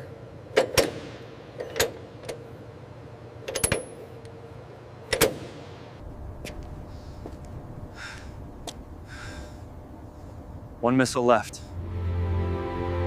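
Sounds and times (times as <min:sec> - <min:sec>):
low steady hum: 0:00.0 - 0:13.0
metallic latch clicks: 0:01.6 - 0:02.4, 0:03.4 - 0:04.0.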